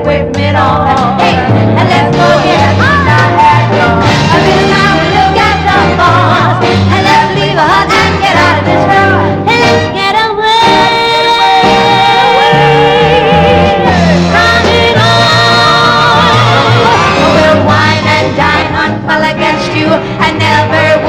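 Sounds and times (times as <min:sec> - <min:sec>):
voices singing: 0:00.0 - 0:09.9, 0:10.6 - 0:21.0
live band music: 0:00.0 - 0:21.0.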